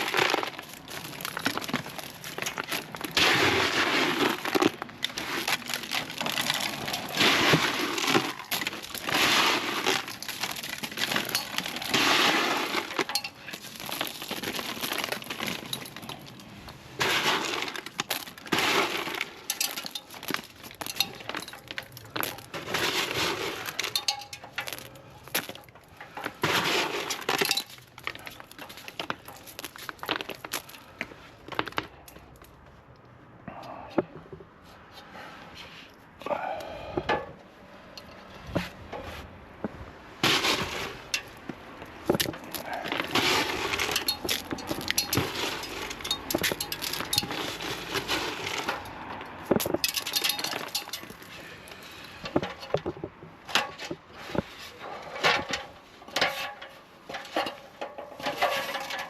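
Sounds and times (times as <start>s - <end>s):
stones clattering on render: 0.0s - 32.5s, 39.6s - 59.0s.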